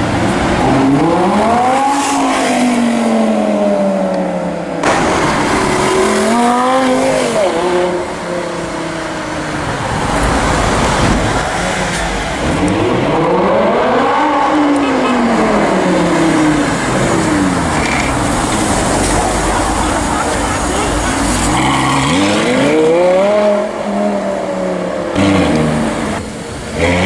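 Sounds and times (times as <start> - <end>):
sports car engine revving: 10.0 - 27.0.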